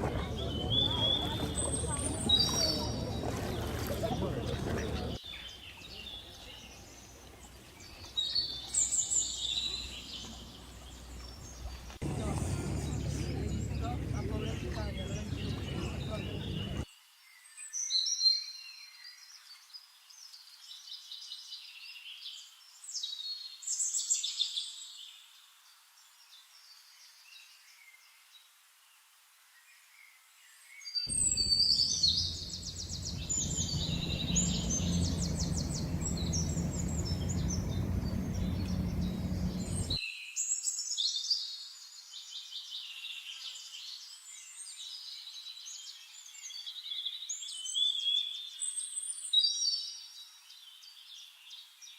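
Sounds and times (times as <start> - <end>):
small birds chirping: 0.0 - 16.8, 31.1 - 40.0
low rumble: 31.1 - 40.0.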